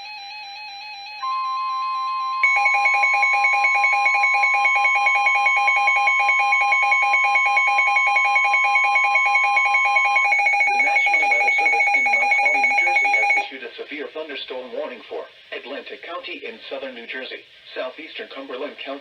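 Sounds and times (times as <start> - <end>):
pulsing electronic alarm beep: 1.2 - 13.4
steady warning alarm tone: 1.2 - 13.4
person reading a warning: 10.4 - 13.4.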